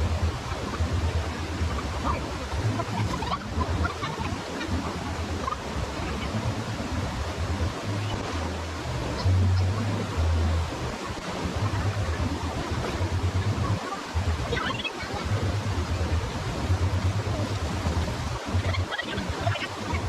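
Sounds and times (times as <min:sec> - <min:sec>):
waterfall rushing: 0:00.0 - 0:20.0.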